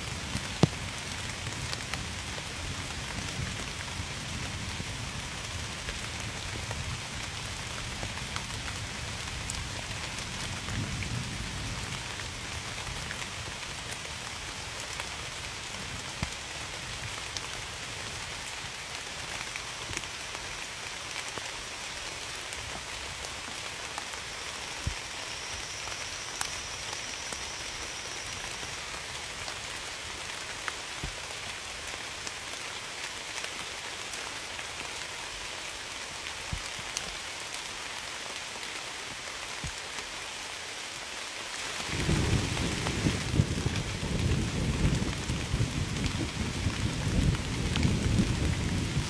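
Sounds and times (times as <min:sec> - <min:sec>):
raindrops ticking on a surface: 0:00.0 - 0:49.0
steady rain falling: 0:00.0 - 0:49.0
low rumble of thunder: 0:41.9 - 0:49.0.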